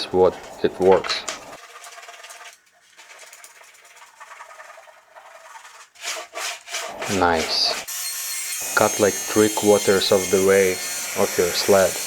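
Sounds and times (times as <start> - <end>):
wax candle rubbed on wood: 1.5 - 7.9.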